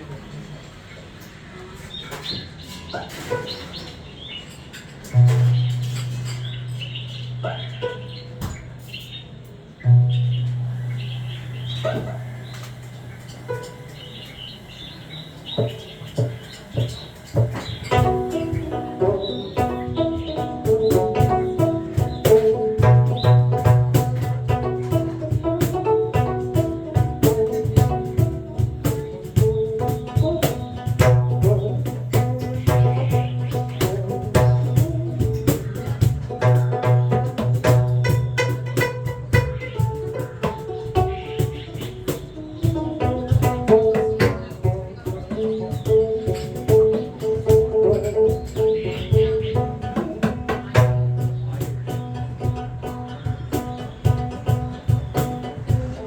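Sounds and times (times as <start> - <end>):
shifting pitched notes: 5.0 - 56.0
percussive strikes and clicks: 15.6 - 56.0.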